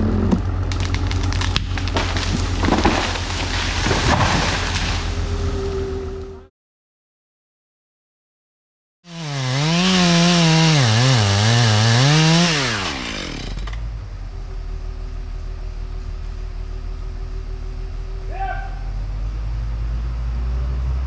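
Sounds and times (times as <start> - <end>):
chainsaw cutting and idling: 0.6 - 5.3, 9.1 - 13.9.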